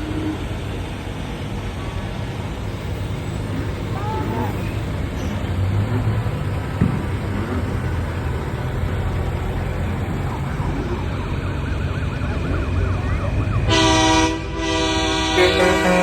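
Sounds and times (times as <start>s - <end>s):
trucks rumbling: 0.0s - 16.0s
faint warbling siren: 9.7s - 14.4s
truck air horn blasting: 13.7s - 16.0s.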